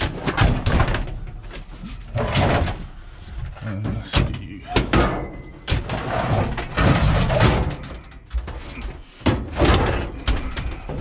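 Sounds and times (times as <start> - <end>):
sheet metal banging and scraping: 4.1 - 11.0.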